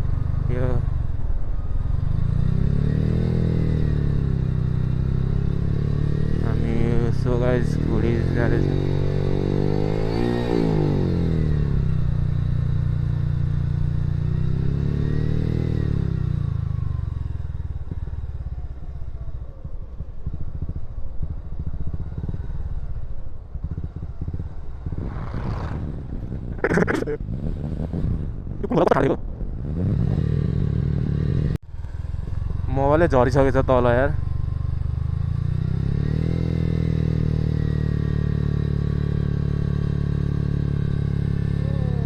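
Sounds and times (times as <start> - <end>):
motorcycle engine revving: 0.0 - 42.0
engine rattling: 17.3 - 42.0.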